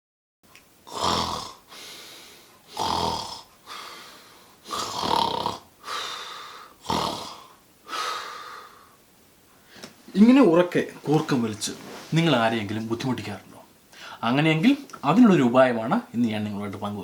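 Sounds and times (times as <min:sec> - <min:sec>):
person snoring loudly: 0:00.8 - 0:08.9
soft breath out: 0:03.6 - 0:04.6, 0:13.9 - 0:14.2.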